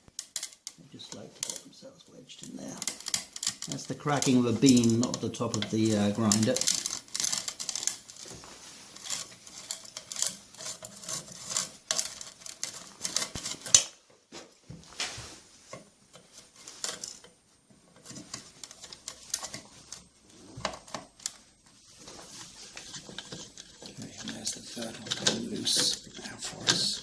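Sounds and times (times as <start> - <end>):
coffee beans crushing: 2.4 - 13.9
screwdriver scraping metal: 2.8 - 8.3, 8.9 - 13.8, 22.0 - 27.0.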